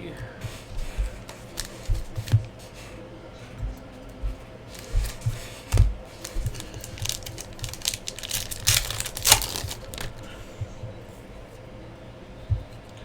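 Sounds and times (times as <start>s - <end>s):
wrappers crinkling: 0.7s - 2.6s, 4.2s - 10.4s
cards clicking and tapping: 0.8s - 2.6s, 4.7s - 10.2s.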